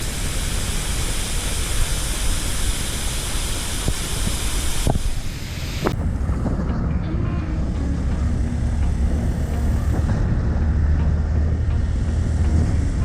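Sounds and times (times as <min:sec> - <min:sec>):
waterfall rushing: 0:00.0 - 0:06.1.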